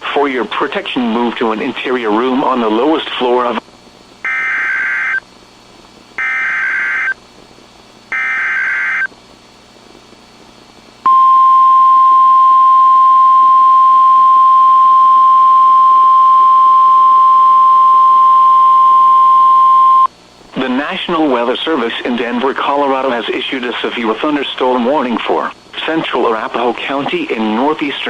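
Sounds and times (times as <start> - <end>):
single-pitch warning alarm tone: 4.2 - 5.2, 6.2 - 7.2, 8.1 - 9.1, 11.1 - 20.1
shrill digital data tones: 8.1 - 9.1.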